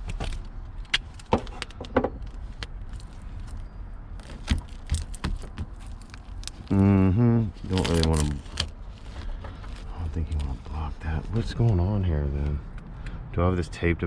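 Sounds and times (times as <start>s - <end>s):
small parts clicking and rattling: 0.0s - 3.6s.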